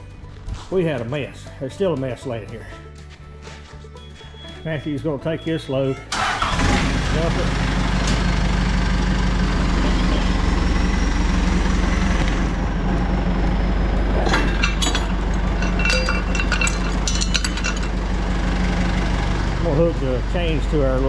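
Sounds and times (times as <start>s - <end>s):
engine idling: 5.5s - 21.0s
metal clinking and rattling: 14.2s - 19.2s.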